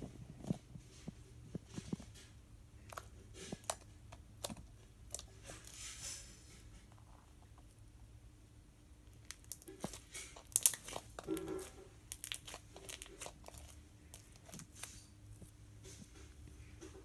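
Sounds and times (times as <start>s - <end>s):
slime squished by hand: 9.1s - 15.0s.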